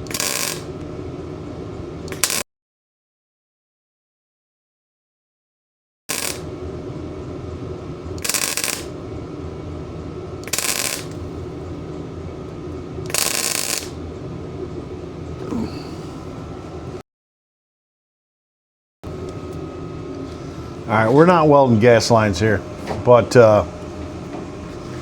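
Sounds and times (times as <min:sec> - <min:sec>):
welder arc crackling: 0:00.0 - 0:00.9, 0:02.0 - 0:02.4, 0:06.1 - 0:06.8, 0:08.0 - 0:09.1, 0:10.0 - 0:15.4
steady hum: 0:00.0 - 0:02.4, 0:06.1 - 0:17.0, 0:19.0 - 0:25.0.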